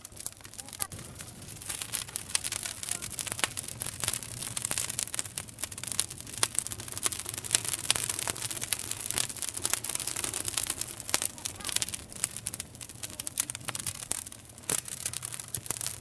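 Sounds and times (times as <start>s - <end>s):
campfire crackling and popping: 0.0s - 16.0s.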